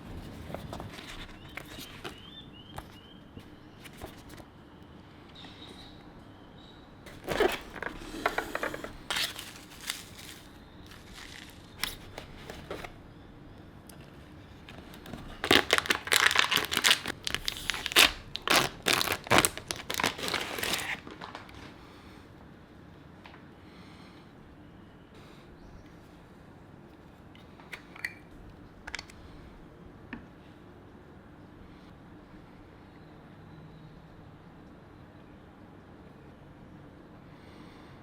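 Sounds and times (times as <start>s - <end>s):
packaging crinkling and tearing: 7.1s - 13.0s, 14.7s - 21.8s.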